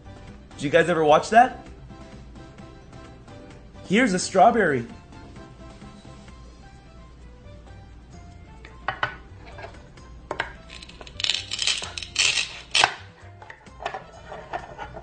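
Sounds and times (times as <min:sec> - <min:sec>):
quiet background music: 0:00.0 - 0:15.0
velcro ripping: 0:10.7 - 0:13.0.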